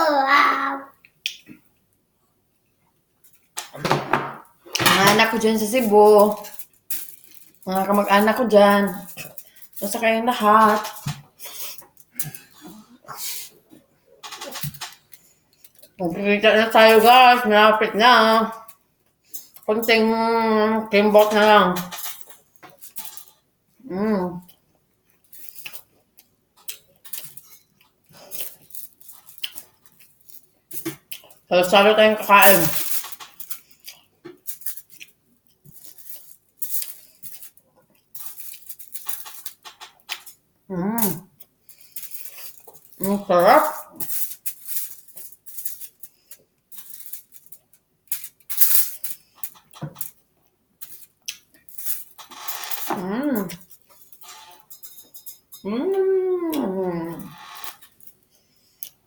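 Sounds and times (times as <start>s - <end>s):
light utensil noises: 3.2s - 17.5s, 18.2s - 20.1s, 20.9s - 23.5s, 24.4s - 40.4s, 41.1s - 59.0s
person chewing food: 24.4s - 31.5s, 33.2s - 40.4s, 41.3s - 43.0s, 44.4s - 52.7s, 56.5s - 59.0s
wet chewing: 24.4s - 31.5s
wavering vocal sound: 55.6s - 57.4s.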